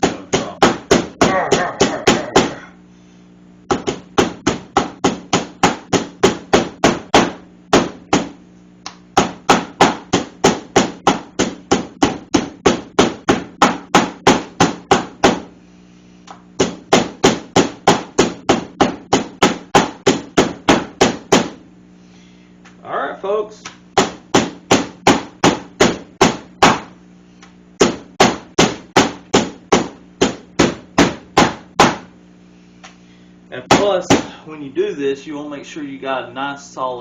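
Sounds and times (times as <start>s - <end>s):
meat tenderizer pounding meat: 0.0s - 2.6s, 3.7s - 8.4s, 9.2s - 15.5s, 16.6s - 21.6s, 24.0s - 26.9s, 27.8s - 32.1s, 33.7s - 34.4s.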